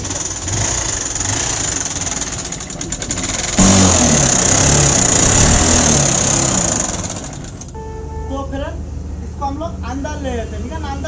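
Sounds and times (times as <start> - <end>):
motorcycle engine harsh mechanical noise: 0.0 - 7.8.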